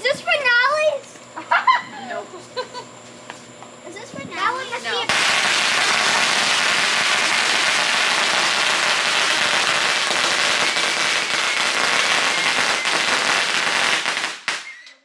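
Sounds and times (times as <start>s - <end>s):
firework fountain hissing and crackling: 4.4s - 14.8s.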